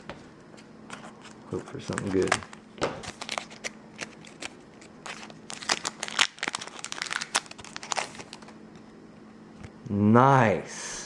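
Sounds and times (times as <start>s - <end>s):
foil pack crinkling: 1.0s - 8.6s.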